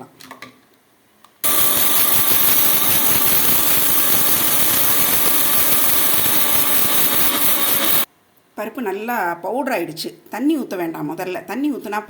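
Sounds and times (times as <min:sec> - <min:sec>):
mixer grinder grinding lentils: 0:01.4 - 0:08.1.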